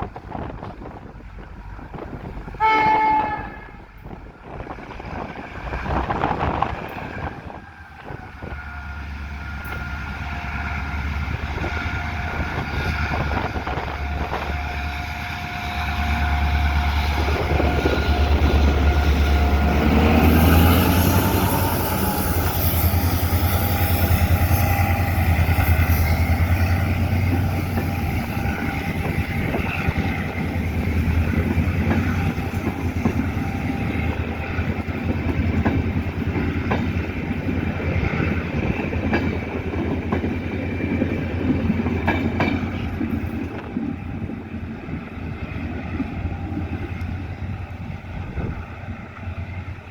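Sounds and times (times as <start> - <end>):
train engine drone: 0.0 - 49.9.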